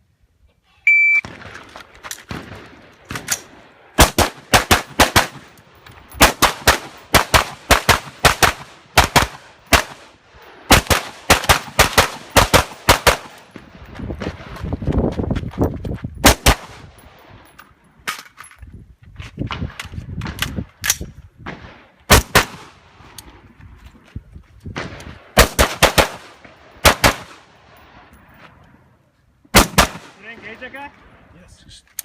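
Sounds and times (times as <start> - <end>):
shot timer beep: 0.9 - 1.2
rifle firing rapid shots: 2.3 - 5.5, 6.2 - 10.1, 10.7 - 13.4, 25.4 - 27.4, 29.6 - 30.2.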